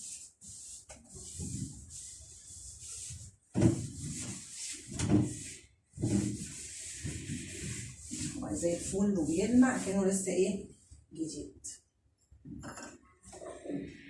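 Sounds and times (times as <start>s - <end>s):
cloth rubbing on wood: 0.0s - 10.3s.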